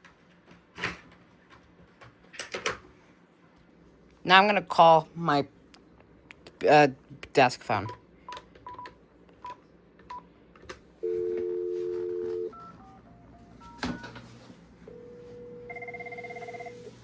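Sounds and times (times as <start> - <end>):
touch-tone digits dialing: 7.8 - 10.2, 15.5 - 16.8
dial tone: 11.0 - 14.1, 14.9 - 17.0
telephone ringback tone: 11.0 - 14.1, 14.9 - 17.0
pulsed electronic phone ring: 14.9 - 16.9.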